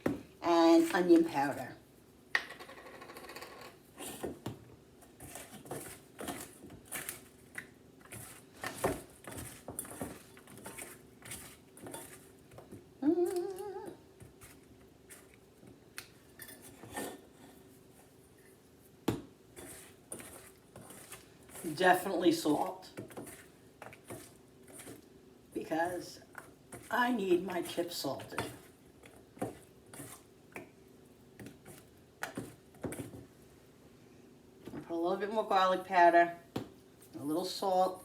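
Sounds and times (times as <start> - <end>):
person humming: 13.0 - 14.0.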